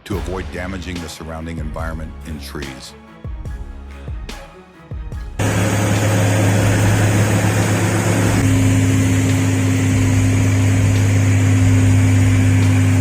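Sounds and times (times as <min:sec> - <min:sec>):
engine running loudly: 0:05.4 - 0:13.0.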